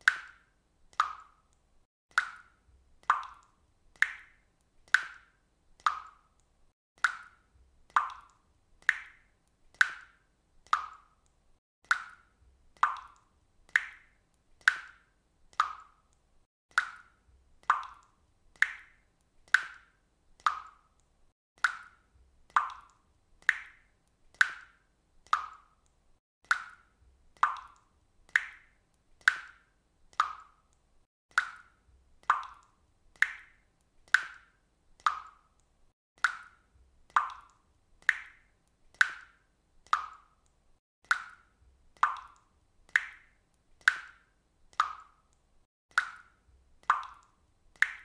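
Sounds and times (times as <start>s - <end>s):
water dripping from faucet: 0.0s - 48.0s.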